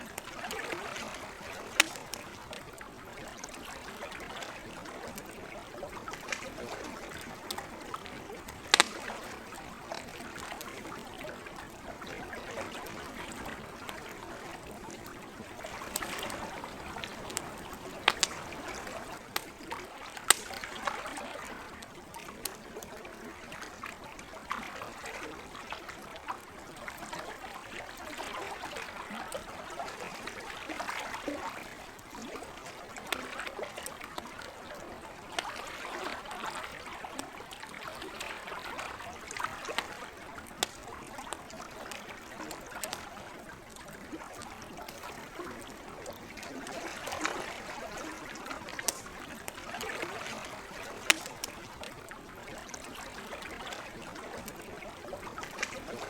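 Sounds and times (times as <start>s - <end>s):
campfire popping and crackling: 0.0s - 23.8s, 37.2s - 56.0s
lake water trickling: 0.0s - 56.0s.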